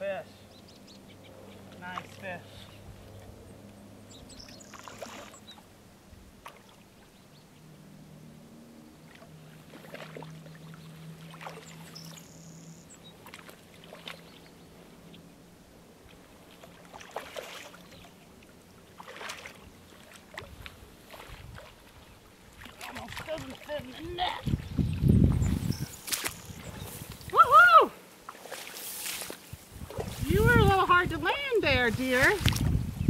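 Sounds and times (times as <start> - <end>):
fish thrashing and splashing water: 4.7 - 5.5, 9.1 - 12.3, 16.1 - 18.2, 18.9 - 26.7.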